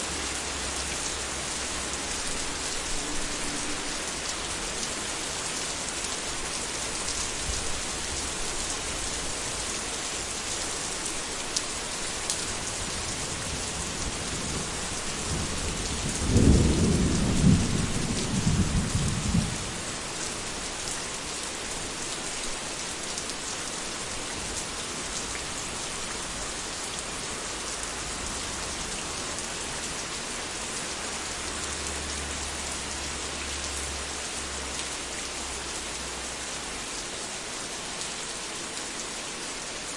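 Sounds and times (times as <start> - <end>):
heavy rain falling: 0.0 - 39.9
thunder rumbling: 15.3 - 19.6.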